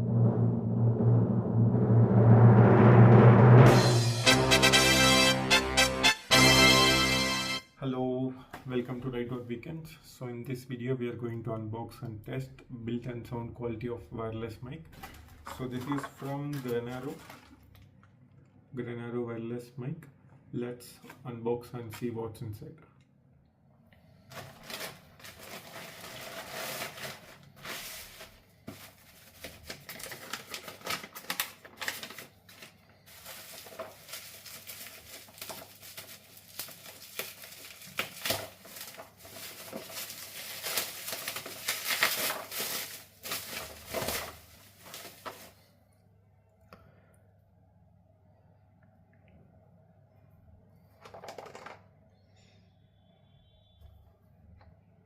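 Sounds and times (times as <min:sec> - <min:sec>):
packaging rustling: 0:15.0 - 0:17.8, 0:24.2 - 0:45.7.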